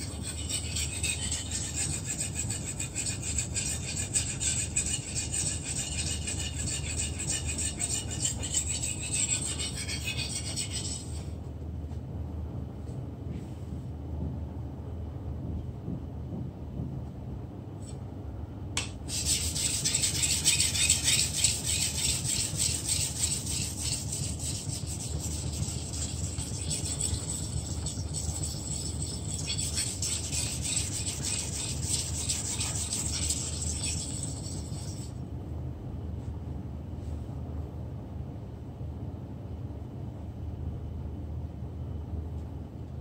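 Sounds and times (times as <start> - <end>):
knife on whetstone: 0.0 - 11.3, 18.8 - 35.1
low steady hum: 0.0 - 43.0.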